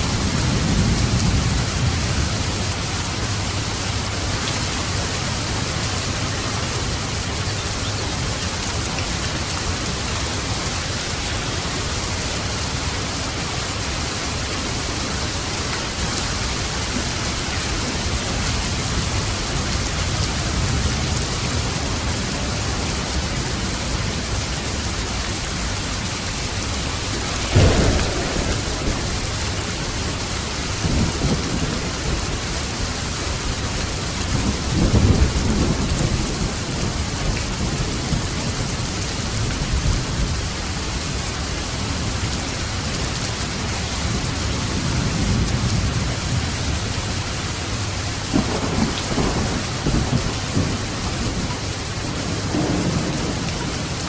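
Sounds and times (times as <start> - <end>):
heavy rain: 0.0 - 54.0
low thunder rumbles: 0.0 - 54.0
thunder crack: 27.2 - 32.1, 48.3 - 51.5, 52.1 - 54.0.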